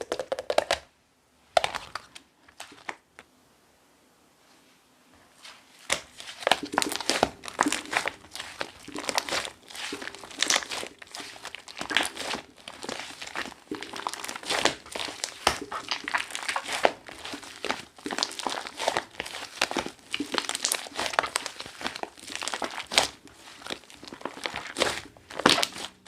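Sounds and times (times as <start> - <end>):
slime crackling and popping: 0.0 - 0.9, 5.8 - 26.0.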